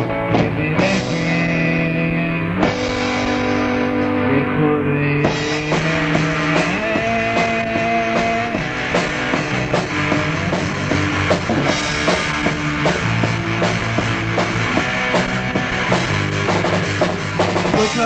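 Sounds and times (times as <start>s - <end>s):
drum kit beat: 0.0s - 4.2s, 5.0s - 18.0s
electric guitar chords: 0.0s - 18.0s.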